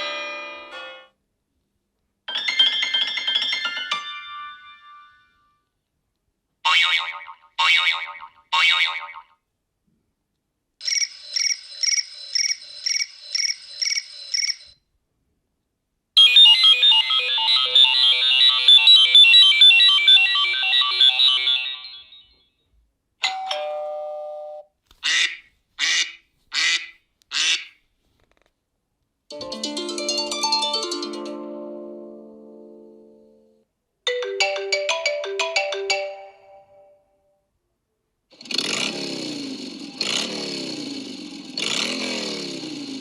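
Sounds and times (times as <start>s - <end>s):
rapid jingle: 2.3s - 5.3s
phone ringtones: 10.8s - 14.8s, 16.2s - 22.4s
quick chirps: 10.8s - 14.8s
tone of layered notes: 29.3s - 33.5s.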